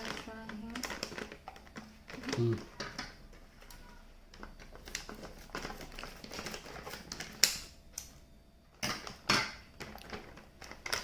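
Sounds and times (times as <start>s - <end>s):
plastic wrapper crinkling: 0.0s - 3.2s, 9.8s - 11.0s.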